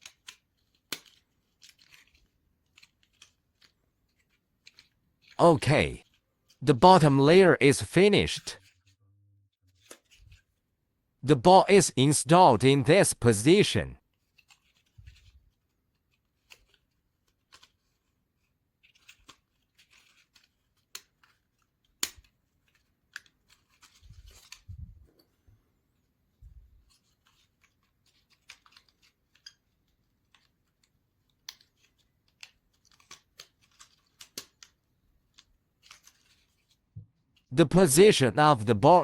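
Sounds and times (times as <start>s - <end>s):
small wooden parts clicking and scraping: 0.0s - 5.4s, 14.2s - 25.3s, 26.8s - 36.8s.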